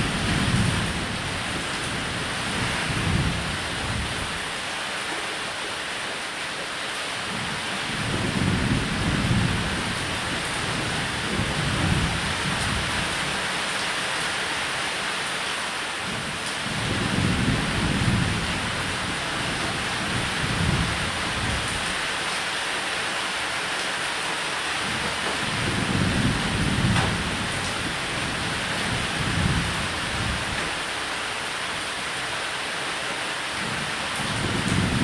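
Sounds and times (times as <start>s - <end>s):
steady rain: 0.0s - 35.0s
thunder rumbling: 8.0s - 13.4s, 16.7s - 22.0s, 24.9s - 30.9s, 34.2s - 35.0s.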